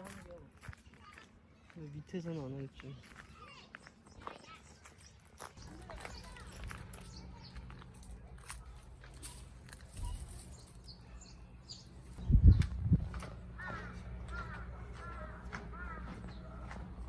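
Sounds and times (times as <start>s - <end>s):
steady low rumble: 6.6s - 17.0s
bird calling: 10.0s - 17.0s.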